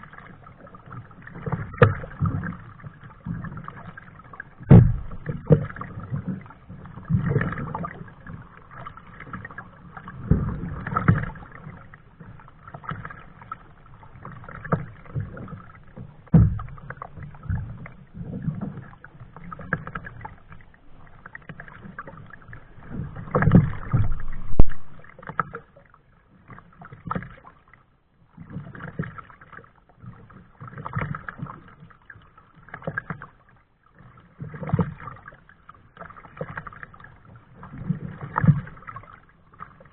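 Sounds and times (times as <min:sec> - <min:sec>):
paddle splashing in water: 0:00.0 - 0:39.9
low knocks: 0:04.6 - 0:05.5, 0:16.3 - 0:16.8, 0:23.5 - 0:25.1.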